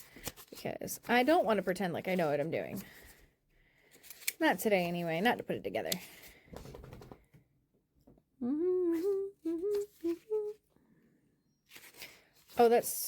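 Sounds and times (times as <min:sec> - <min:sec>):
woman humming: 0:08.4 - 0:10.6.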